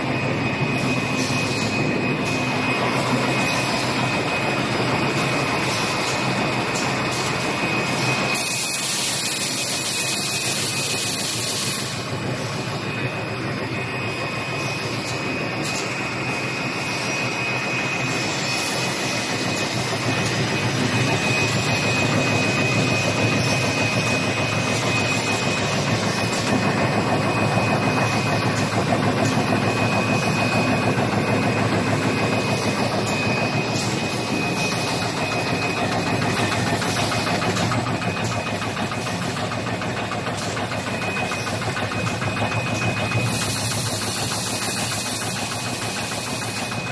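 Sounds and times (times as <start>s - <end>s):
high machine whine: 0.0s - 46.9s.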